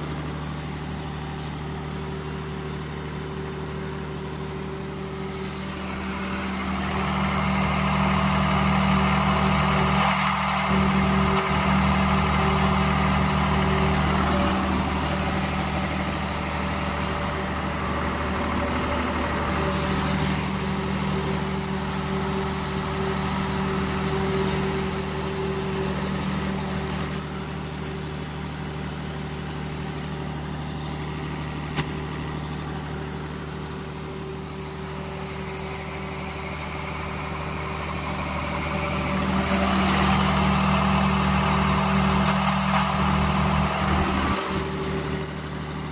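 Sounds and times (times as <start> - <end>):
diesel generator engine drone: 0.0 - 45.9.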